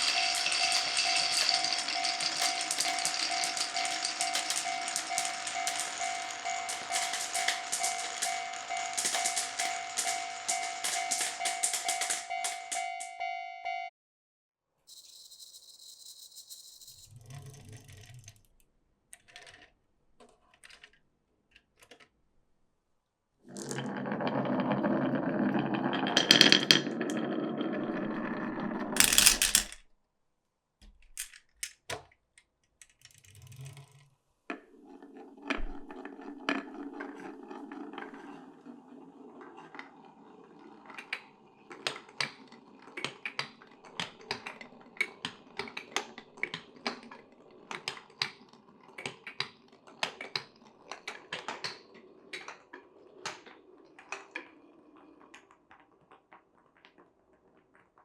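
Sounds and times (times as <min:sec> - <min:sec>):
marbles rolling in wooden run: 0:00.0 - 0:13.1, 0:19.2 - 0:21.0, 0:23.5 - 0:29.9, 0:33.6 - 0:58.0.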